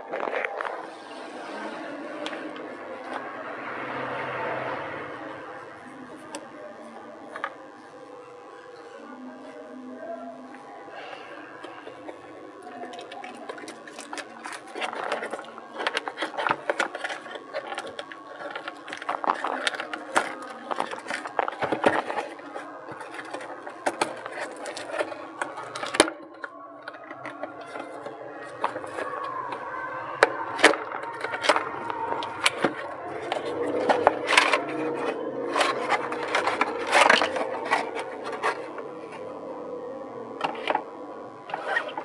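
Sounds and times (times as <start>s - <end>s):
packaging rubbing and scraping: 0.0s - 3.3s, 11.0s - 42.0s
plastic and cardboard clicks: 11.6s - 39.4s.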